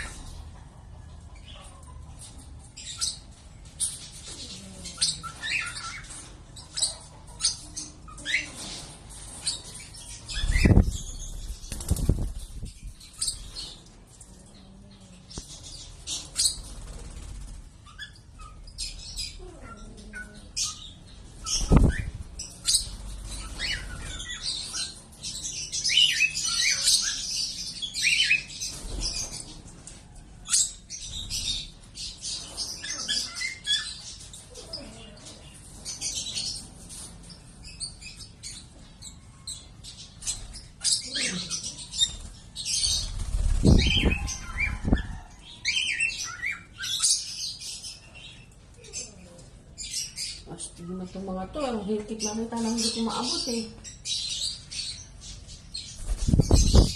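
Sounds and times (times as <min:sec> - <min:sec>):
lovebirds chirping: 0:00.0 - 0:56.9.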